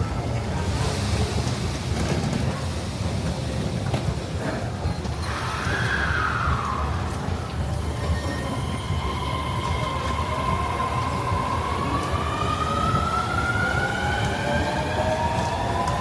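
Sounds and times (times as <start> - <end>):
train low rumble: 0.0 - 16.0
train high whine rising: 5.1 - 16.0.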